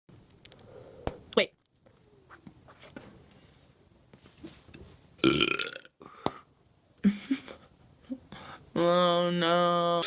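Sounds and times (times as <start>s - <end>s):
person burping into bubblegum: 5.2s - 6.0s.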